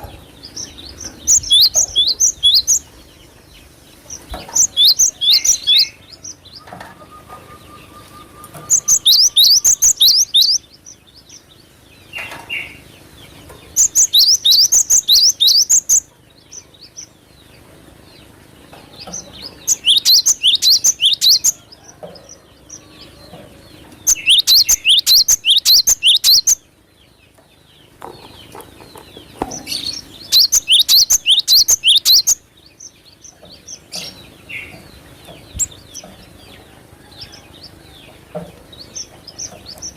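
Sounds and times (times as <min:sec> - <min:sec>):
soft bird chirps: 0:00.0 - 0:39.9
bird singing rapid high notes: 0:00.5 - 0:03.0, 0:04.5 - 0:10.8, 0:13.7 - 0:16.1, 0:19.4 - 0:21.6, 0:24.0 - 0:26.6, 0:29.6 - 0:33.0.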